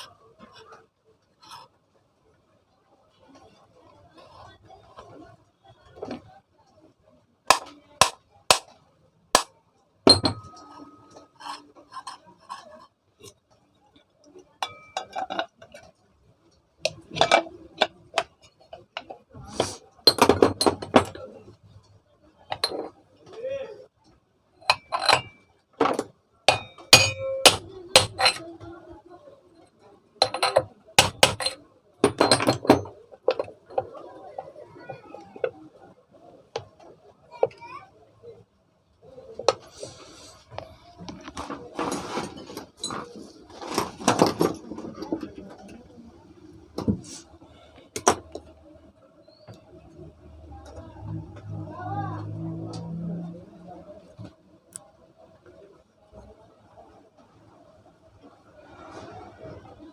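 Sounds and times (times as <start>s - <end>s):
metal parts and tools clinking: 16.9s - 19.2s, 24.6s - 28.5s, 30.2s - 34.0s.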